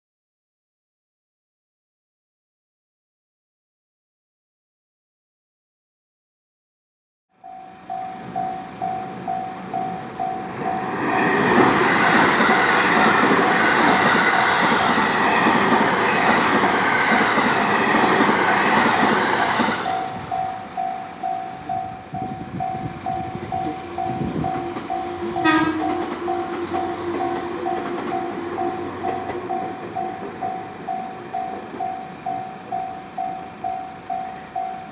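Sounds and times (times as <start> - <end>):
brief high tone: 7.4 - 10.8, 19.9 - 34.9
level crossing alarm ringing: 7.4 - 11.0, 18.8 - 34.9
train rumble: 7.4 - 34.9.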